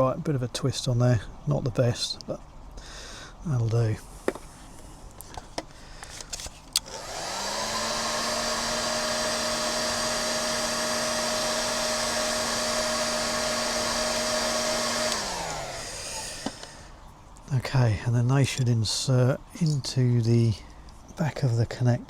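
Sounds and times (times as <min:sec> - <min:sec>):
heat gun fan whine and hiss: 0:05.6 - 0:17.2
heat gun switch clicks: 0:06.1 - 0:16.8.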